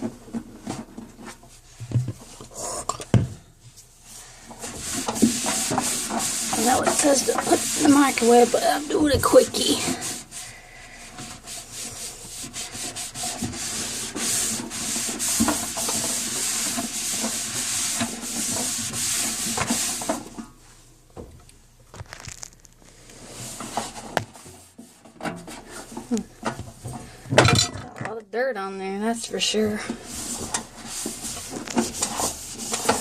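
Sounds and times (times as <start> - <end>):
hand scrubbing inside microwave: 3.8 - 20.9, 23.2 - 27.2, 29.2 - 33.0.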